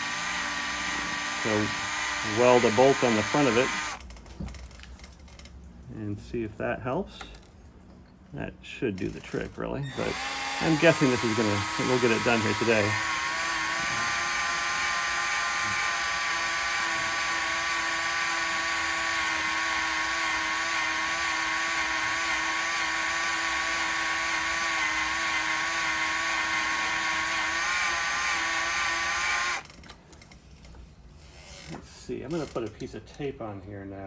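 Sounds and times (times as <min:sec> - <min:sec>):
electric drill whining: 0:00.0 - 0:04.0, 0:09.9 - 0:29.7.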